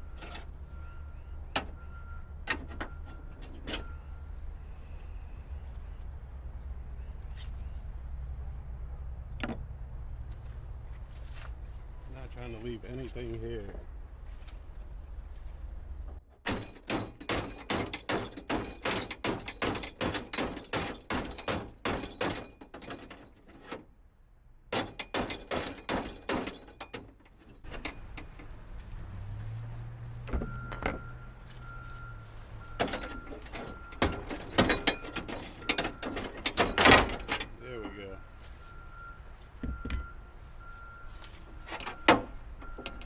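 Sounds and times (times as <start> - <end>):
thin steady squeak: 0.0 - 6.0
window rattling and scraping: 32.8 - 37.6.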